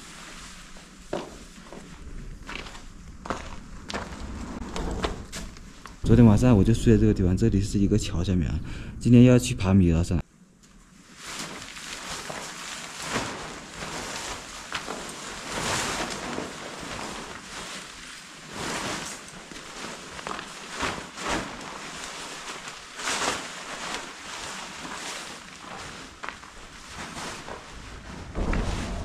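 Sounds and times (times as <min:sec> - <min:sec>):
low rumble: 0:01.9 - 0:10.2, 0:27.8 - 0:29.0
wind buffeting microphone: 0:27.8 - 0:29.0.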